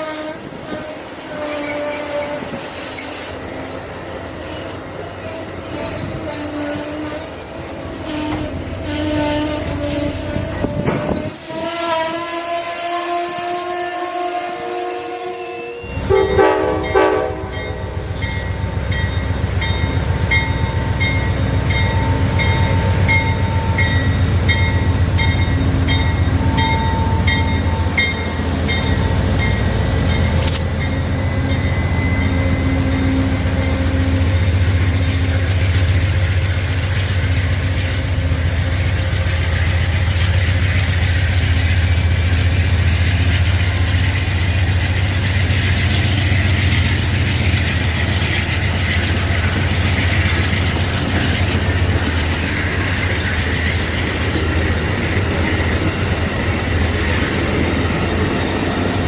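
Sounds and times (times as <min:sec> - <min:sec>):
train horn: 0:00.0 - 0:03.7, 0:04.4 - 0:18.4
train rumbling past: 0:00.0 - 0:59.0.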